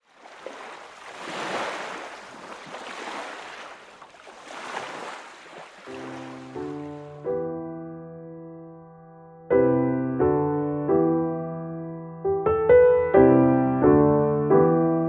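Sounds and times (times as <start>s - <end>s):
ocean waves washing in: 0.0s - 7.2s
piano music: 5.9s - 15.0s.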